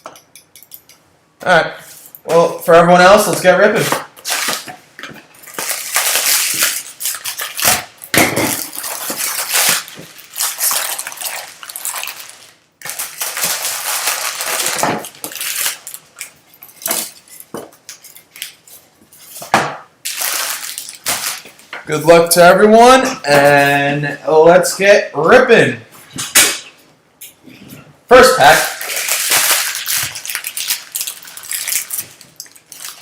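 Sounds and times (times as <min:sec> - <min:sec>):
packaging crinkling and tearing: 0:03.8 - 0:18.6, 0:20.0 - 0:21.6, 0:28.4 - 0:33.0.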